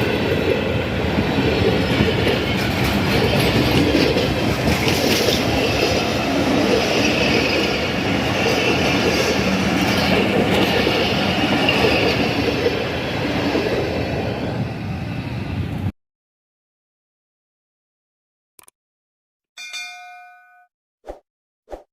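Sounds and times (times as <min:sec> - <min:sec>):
train wheels rumbling on rails: 0:00.0 - 0:15.9.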